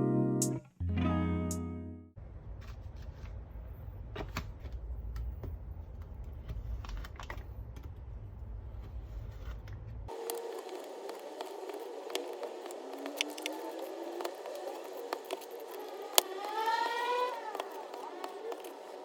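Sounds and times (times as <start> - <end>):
guitar music phrase: 0.0 - 2.1.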